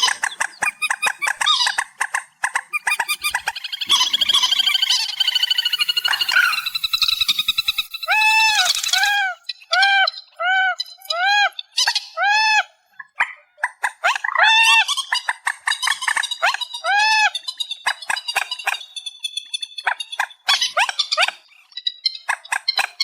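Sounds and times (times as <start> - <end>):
bird chattering clicks and squeaks: 0.0 - 12.0, 13.0 - 23.0
birds calling arched notes: 0.0 - 12.2.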